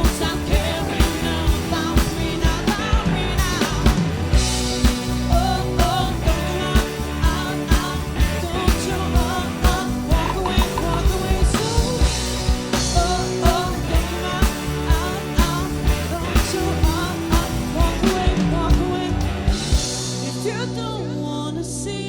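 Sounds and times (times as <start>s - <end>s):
person singing: 0.0s - 4.0s, 5.1s - 22.0s
band playing rock music: 0.0s - 21.8s
drum beat: 10.1s - 14.1s.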